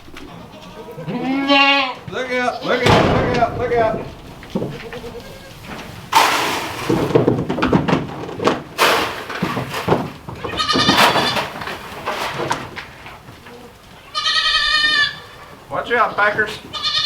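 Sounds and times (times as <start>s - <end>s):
goats bleating: 0.0s - 6.0s, 10.3s - 11.6s, 13.7s - 17.0s
herd scuffling and rustling: 0.0s - 17.0s.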